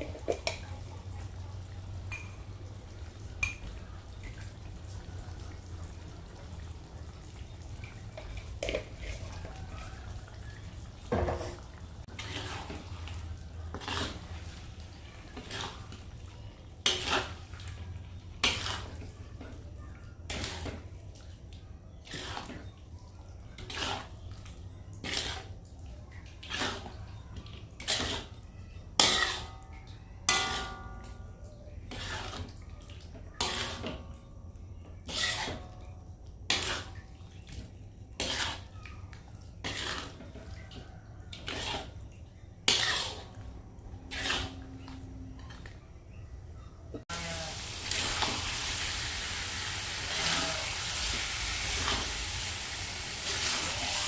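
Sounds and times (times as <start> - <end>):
metal utensil scraping a pot: 11.4 - 12.8, 13.7 - 14.5, 16.8 - 17.4, 18.4 - 19.0, 27.8 - 28.4, 29.0 - 29.6, 30.3 - 31.1, 31.9 - 32.5, 33.4 - 34.0, 35.0 - 35.8, 38.2 - 38.7, 39.6 - 40.4, 41.4 - 42.0, 42.6 - 43.4, 44.0 - 45.7.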